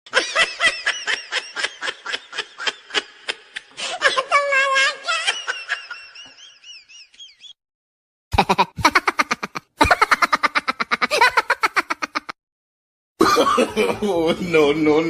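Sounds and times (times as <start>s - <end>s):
voice-like laugh: 8.3s - 12.4s, 13.2s - 14.4s
staccato high-pitched laugh: 8.4s - 12.4s.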